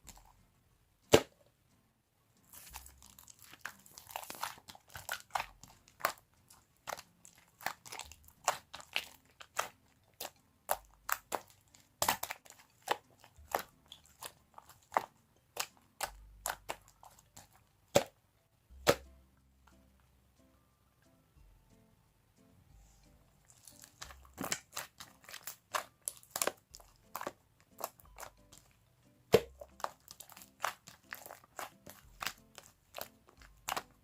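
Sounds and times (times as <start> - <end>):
slime squishing: 2.5 - 18.2, 23.4 - 34.0
slime popping and clicking: 6.8 - 18.1, 23.7 - 28.7.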